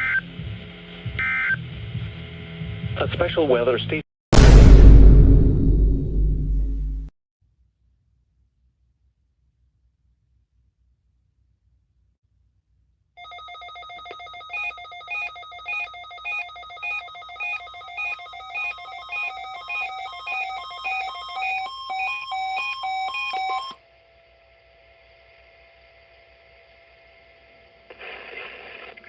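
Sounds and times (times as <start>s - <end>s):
electronic alert beeping tones: 13.5s - 23.8s.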